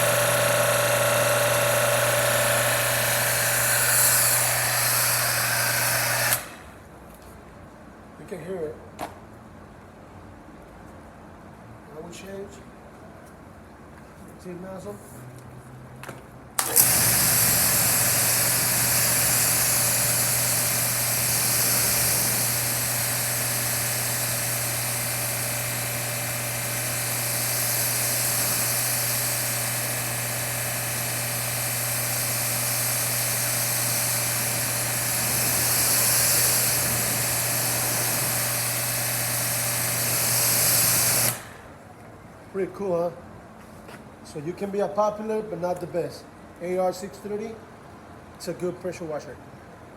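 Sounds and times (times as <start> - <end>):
water jet hissing: 0.0 - 6.7, 16.6 - 41.7
pressure washer motor humming: 0.0 - 6.8, 16.6 - 41.8.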